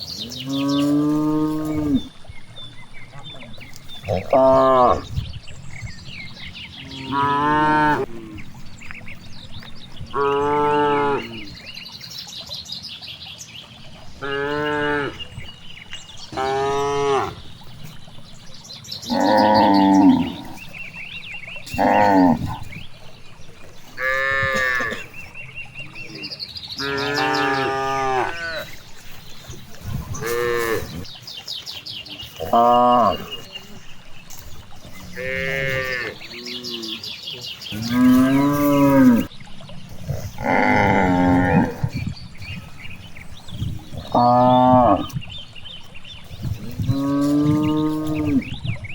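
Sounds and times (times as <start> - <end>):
cattle mooing: 0.5 - 2.2, 4.0 - 5.2, 6.8 - 11.6, 14.0 - 18.4, 19.1 - 26.0, 26.8 - 31.1, 34.7 - 37.0, 37.7 - 42.0, 43.5 - 45.2, 46.3 - 48.6.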